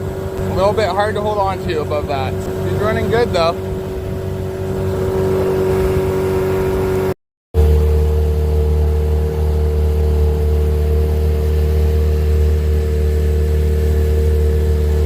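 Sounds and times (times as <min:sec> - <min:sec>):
outboard motor running: 0:00.0 - 0:15.0.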